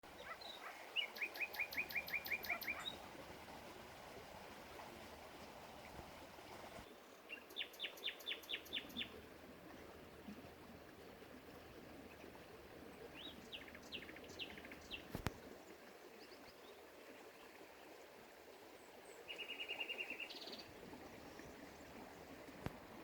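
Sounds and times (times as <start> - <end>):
songbird chirping: 0.0 - 3.2, 4.8 - 9.2, 12.0 - 15.4, 18.8 - 22.8
flowing water murmur: 0.0 - 23.0.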